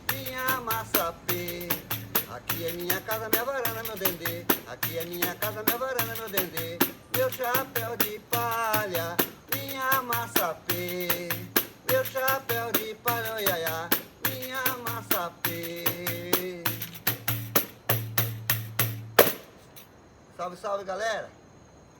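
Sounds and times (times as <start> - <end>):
man singing: 0.0 - 17.5
rattle shaken to a beat: 0.0 - 19.9.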